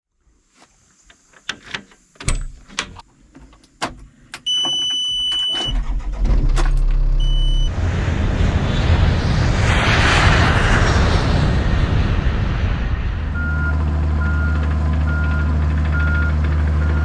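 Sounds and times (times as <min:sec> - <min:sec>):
high electronic warning beep: 0:04.5 - 0:05.9, 0:07.2 - 0:07.7
diesel engine cranking and running: 0:04.7 - 0:07.6, 0:13.7 - 0:17.0.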